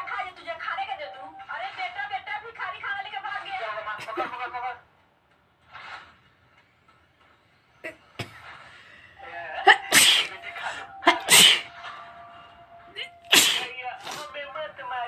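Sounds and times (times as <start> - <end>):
woman sneezing: 9.7 - 11.7, 13.0 - 14.3.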